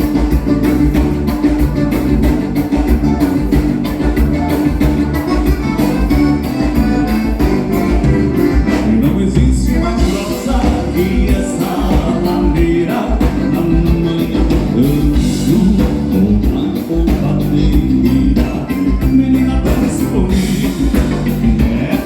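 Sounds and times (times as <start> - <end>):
live regional band playing: 0.0 - 22.0
person singing: 8.0 - 22.0.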